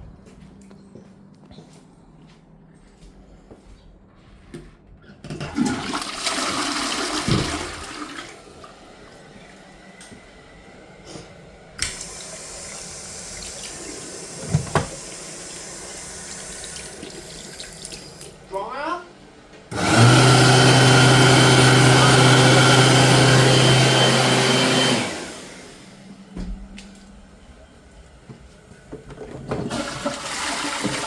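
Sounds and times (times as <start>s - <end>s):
toilet flushing: 5.3s - 10.8s, 11.7s - 18.4s, 19.7s - 26.0s, 29.0s - 31.0s.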